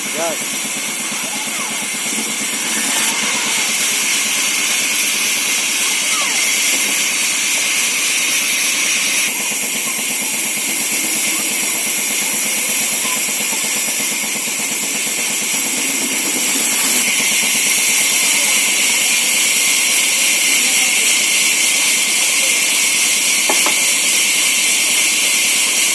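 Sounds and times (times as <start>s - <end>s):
saw mill machine running: 0.0s - 25.9s.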